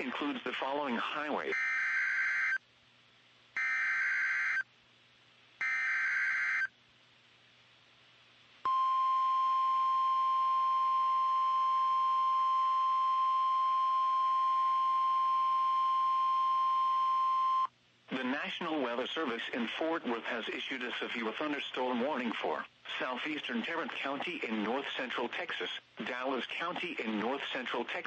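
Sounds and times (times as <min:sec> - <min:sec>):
steady warning alarm tone: 0:03.6 - 0:04.6, 0:05.6 - 0:06.7.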